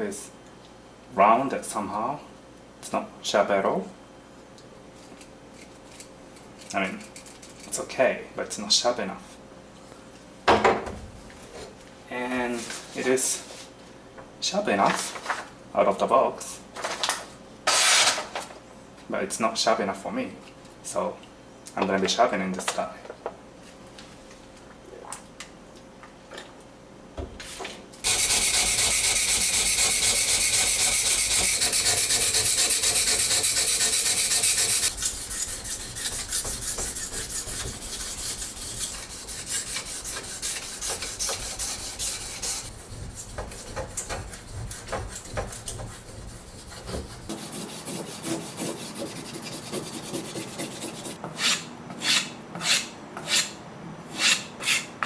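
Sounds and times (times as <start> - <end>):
knife scraping on sharpener: 28.1 - 53.6, 54.2 - 54.9.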